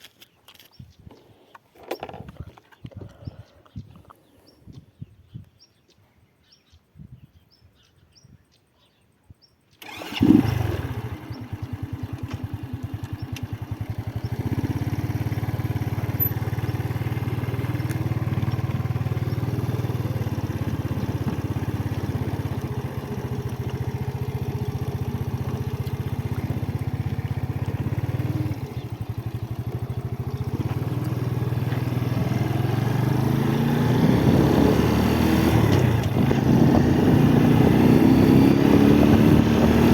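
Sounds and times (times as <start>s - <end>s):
motorcycle engine starting and idling: 9.8s - 39.9s.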